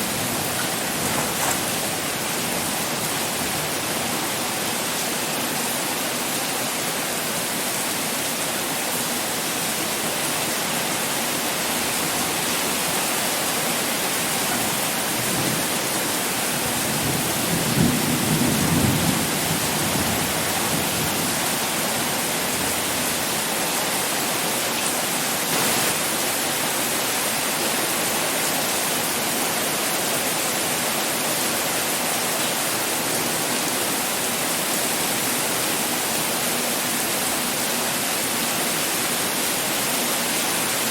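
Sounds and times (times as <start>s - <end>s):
heavy rain pouring: 0.0s - 40.9s
low rumble of thunder: 16.7s - 21.2s.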